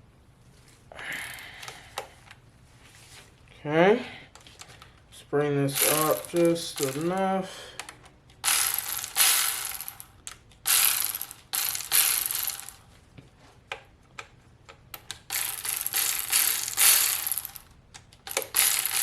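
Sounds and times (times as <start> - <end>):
hand ratchet clicking: 5.7 - 12.8, 14.2 - 19.0.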